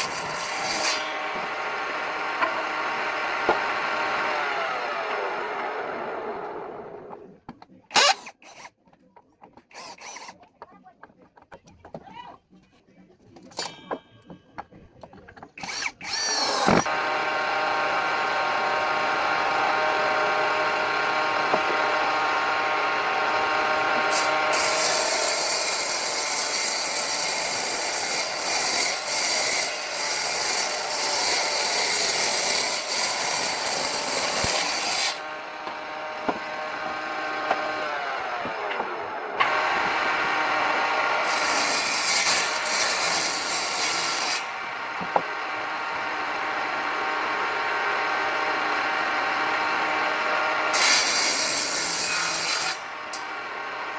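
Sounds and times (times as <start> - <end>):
power tool motor whine: 0.7 - 7.2, 15.6 - 25.9, 30.9 - 51.8
tool rasping wood: 18.6 - 45.4, 46.7 - 53.2.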